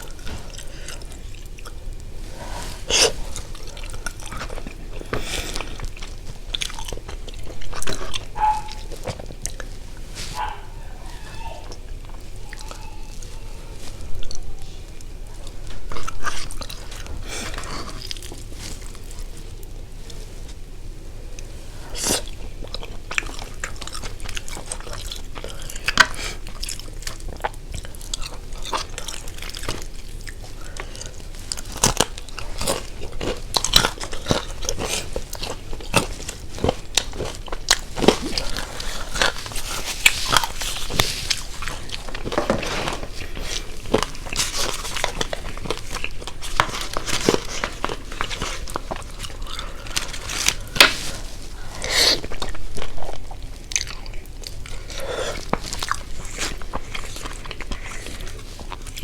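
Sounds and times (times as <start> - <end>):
person chewing crunchy food: 0.0 - 59.0.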